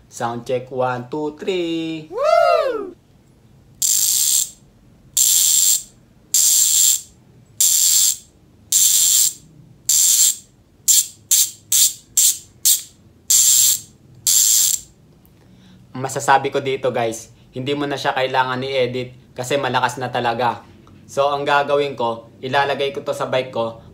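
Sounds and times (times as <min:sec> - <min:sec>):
bike hub freewheel clicking buzz: 0:03.8 - 0:04.6, 0:05.2 - 0:14.9.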